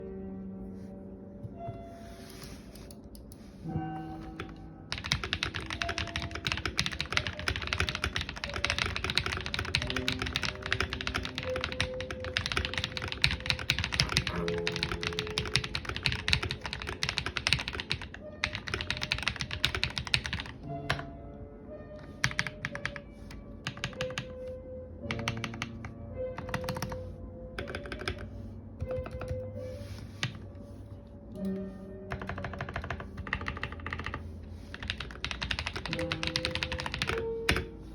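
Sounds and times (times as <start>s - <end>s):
background music: 0.0s - 37.9s
mechanical keyboard typing: 4.2s - 21.1s, 22.1s - 23.0s, 23.6s - 24.4s, 25.1s - 27.0s, 27.6s - 29.5s, 32.1s - 37.7s.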